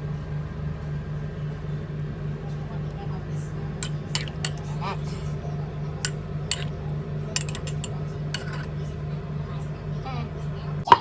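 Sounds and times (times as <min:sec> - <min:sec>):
steady low hum: 0:00.0 - 0:10.9
cutlery clinking on crockery: 0:03.8 - 0:05.2, 0:06.0 - 0:08.8.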